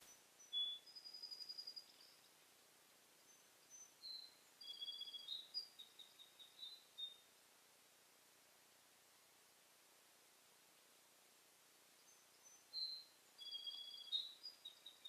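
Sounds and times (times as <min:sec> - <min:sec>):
small songbirds singing: 0:00.0 - 0:07.4, 0:11.9 - 0:15.0.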